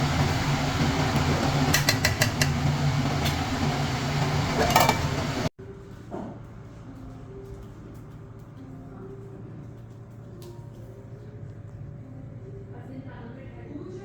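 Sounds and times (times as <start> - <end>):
steady humming background: 0.0 - 14.0
utensils clinking against cookware: 1.7 - 2.6, 4.5 - 5.3.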